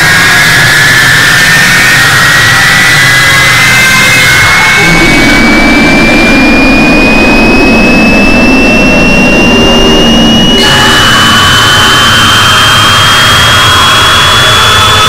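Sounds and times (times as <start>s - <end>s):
harsh noise layers: 0.0s - 15.0s
high-pitched tone gliding upward: 4.8s - 12.0s.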